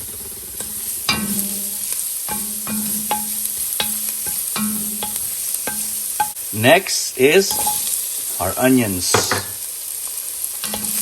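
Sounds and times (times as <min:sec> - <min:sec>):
garlic sizzling in a pan: 0:00.0 - 0:11.0
metal utensil clinking on pan: 0:01.1 - 0:06.4, 0:07.5 - 0:08.0, 0:10.6 - 0:11.0.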